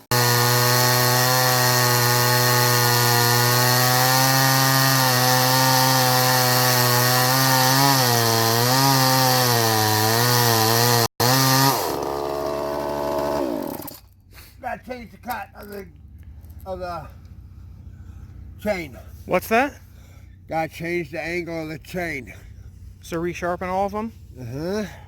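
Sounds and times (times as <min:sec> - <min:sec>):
chainsaw cutting log: 0:00.0 - 0:14.0.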